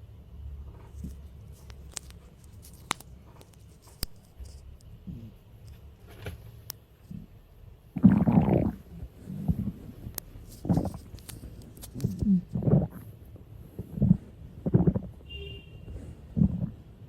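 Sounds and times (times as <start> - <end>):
faint stomach rumbling: 5.0 - 5.4, 7.0 - 15.2, 16.1 - 17.0
stomach gurgles: 5.0 - 5.4, 7.1 - 15.2, 16.2 - 17.0.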